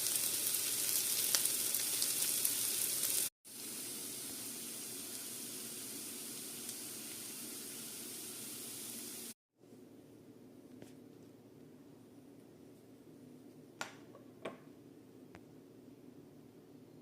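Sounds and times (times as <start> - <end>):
food sizzling in a pan: 0.0 - 9.4
faint hiss: 2.4 - 9.4.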